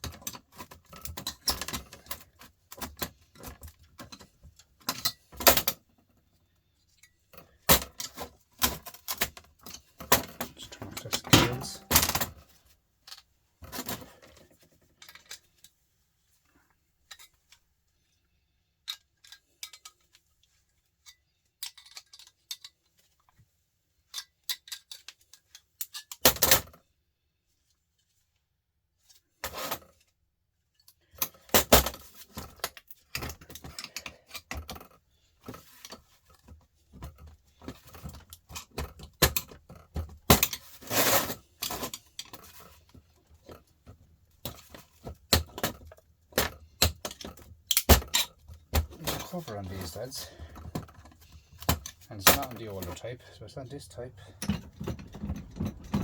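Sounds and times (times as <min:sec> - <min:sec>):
small metal and plastic parts clinking: 0:18.8 - 0:23.1, 0:24.0 - 0:26.8, 0:44.4 - 0:53.1.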